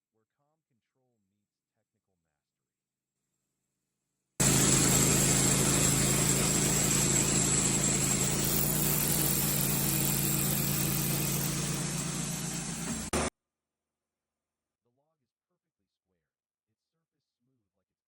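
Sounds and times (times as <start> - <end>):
engine running: 4.4 - 13.3.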